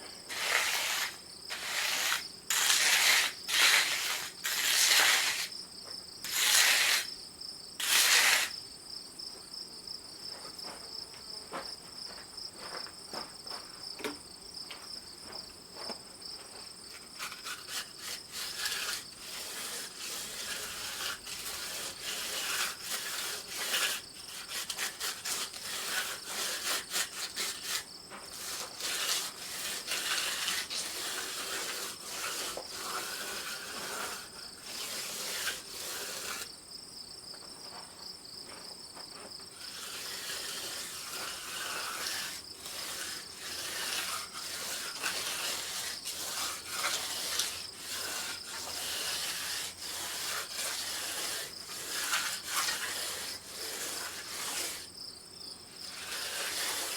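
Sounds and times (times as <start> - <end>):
irregular scraping strokes: 0.0 - 5.6, 6.2 - 7.2, 7.8 - 8.6, 16.9 - 36.6, 39.2 - 55.0, 55.7 - 56.9.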